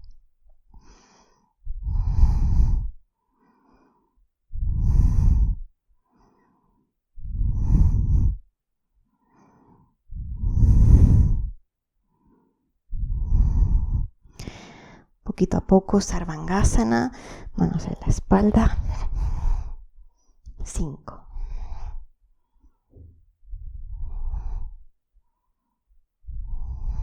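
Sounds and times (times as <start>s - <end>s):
person breathing slowly: 0.8s - 8.5s, 9.1s - 15.1s, 17.1s - 17.6s, 18.8s - 20.4s, 21.3s - 27.0s.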